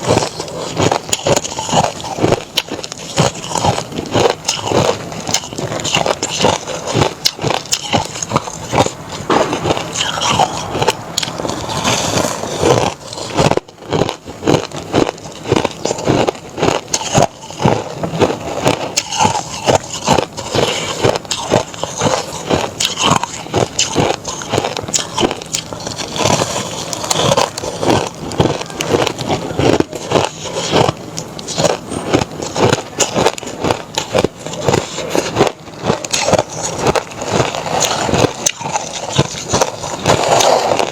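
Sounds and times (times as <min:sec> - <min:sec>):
crushed ice crunching: 0:00.0 - 0:40.9.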